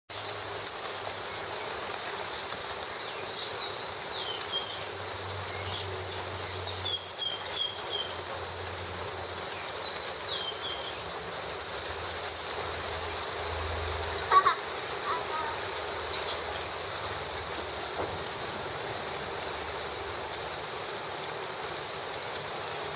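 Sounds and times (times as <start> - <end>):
steady rain falling: 0.1 - 22.9
bird chirping: 5.5 - 8.2, 9.5 - 11.1.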